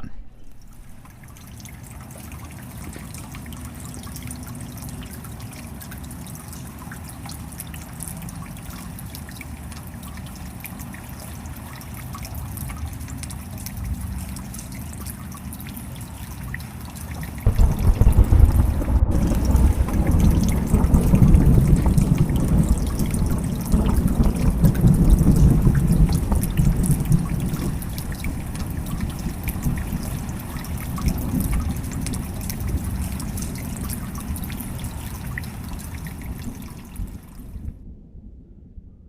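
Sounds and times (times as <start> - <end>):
heavy rain: 15.9 - 37.6
low rumble: 17.5 - 30.1.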